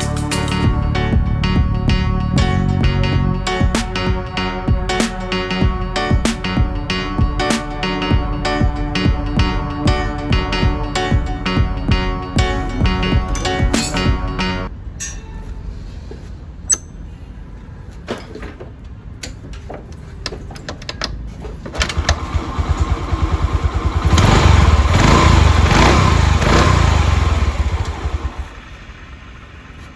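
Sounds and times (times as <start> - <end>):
scooter engine revving: 21.8 - 29.2.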